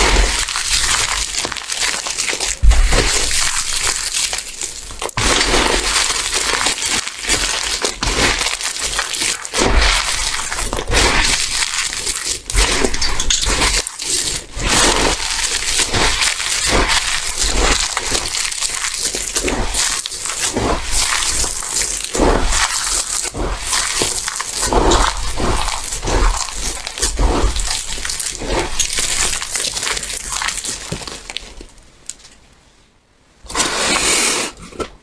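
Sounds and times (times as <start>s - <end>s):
dry soap crunching: 0.0s - 32.4s.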